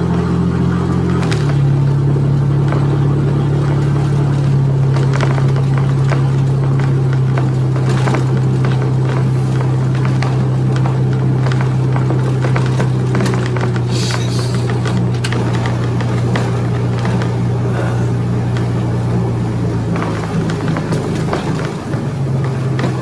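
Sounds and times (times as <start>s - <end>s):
road noise: 0.0s - 23.0s
vehicle engine running: 0.0s - 23.0s
light clicks and scrapes: 12.7s - 18.7s.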